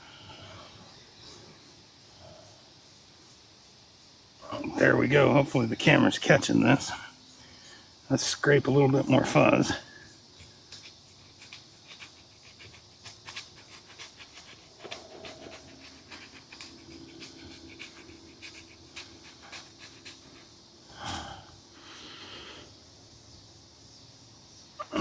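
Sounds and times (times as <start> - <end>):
knife scraping wood shavings: 10.7 - 20.6.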